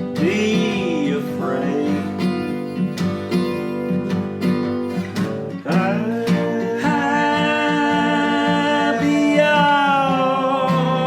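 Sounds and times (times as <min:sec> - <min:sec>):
person singing: 0:00.0 - 0:02.7, 0:05.6 - 0:11.0
acoustic guitar strumming: 0:00.0 - 0:11.0.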